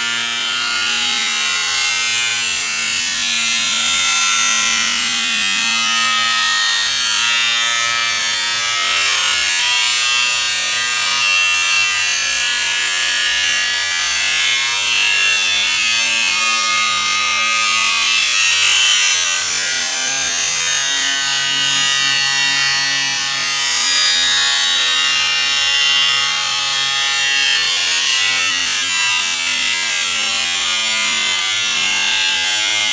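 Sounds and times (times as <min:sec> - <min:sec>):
angle grinder cutting sheet metal: 0:00.0 - 0:32.9.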